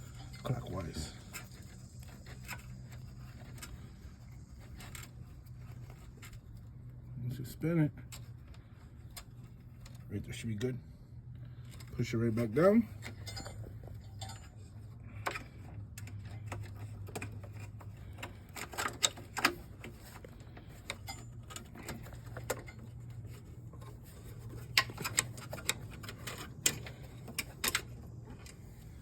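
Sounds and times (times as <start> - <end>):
low steady hum: 0.0 - 29.0
clicks and knocks of mower parts: 8.0 - 10.8, 11.4 - 29.0.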